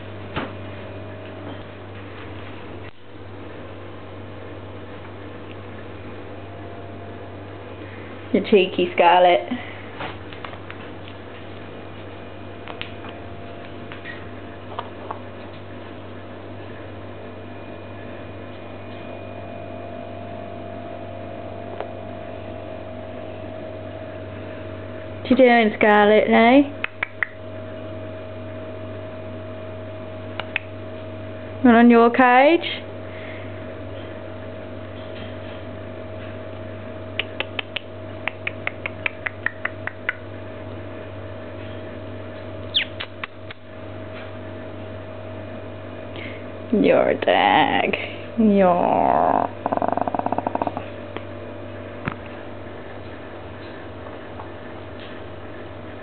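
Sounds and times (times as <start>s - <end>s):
steady low hum: 0.0s - 56.0s
faint even whine: 16.0s - 31.8s
parrot clicks: 30.4s - 30.7s, 37.2s - 40.2s.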